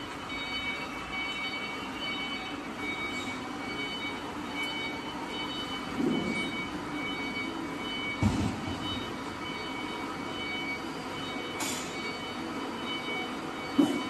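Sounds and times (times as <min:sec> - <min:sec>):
loud thud: 0:08.2 - 0:09.0.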